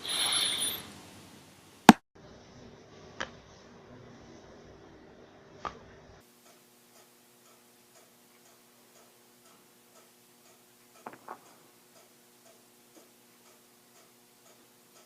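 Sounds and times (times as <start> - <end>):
faint clock ticking: 6.2 - 15.0.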